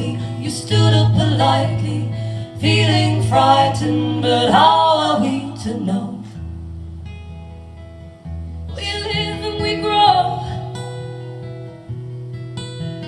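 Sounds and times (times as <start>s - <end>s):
person singing: 0.0s - 6.4s
acoustic guitar chords: 0.0s - 13.0s.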